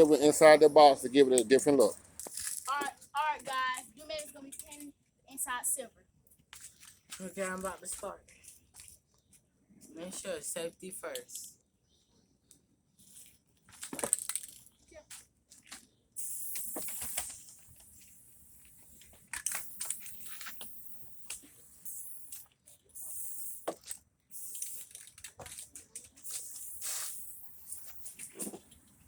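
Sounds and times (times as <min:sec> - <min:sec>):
spray paint can hissing: 0:16.2 - 0:18.1, 0:19.5 - 0:25.2, 0:26.2 - 0:28.5.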